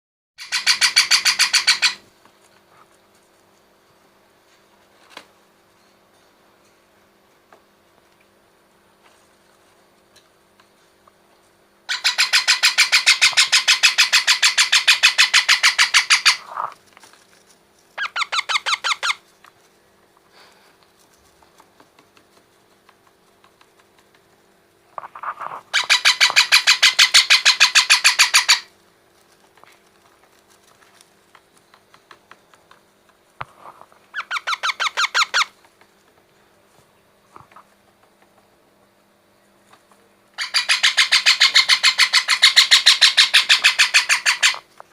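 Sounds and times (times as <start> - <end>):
baby parrots calling: 0.4 - 2.0, 11.9 - 16.7, 18.0 - 19.2, 25.2 - 28.7, 34.1 - 35.5, 40.4 - 44.6.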